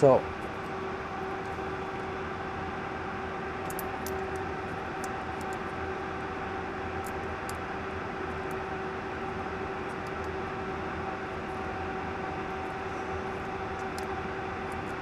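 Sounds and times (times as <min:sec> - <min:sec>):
fan hum: 0:00.0 - 0:15.0.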